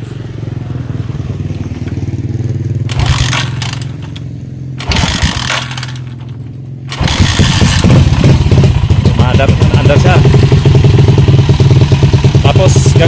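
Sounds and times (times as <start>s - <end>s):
motorcycle engine running: 0.0s - 13.0s
motorcycle kick-start clatter: 2.9s - 8.7s.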